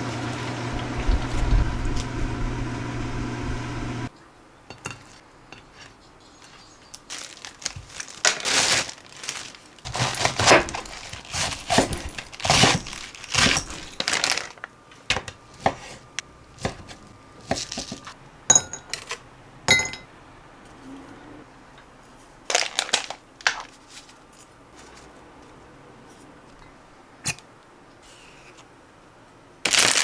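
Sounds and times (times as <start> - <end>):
crinkly packaging rustling: 6.4 - 18.2, 22.1 - 25.6, 29.7 - 30.0.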